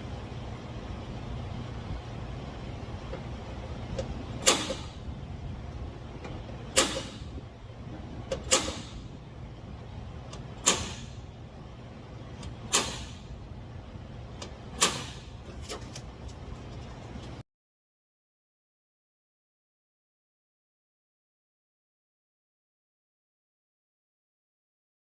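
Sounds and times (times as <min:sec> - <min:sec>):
fan humming: 0:00.0 - 0:17.4.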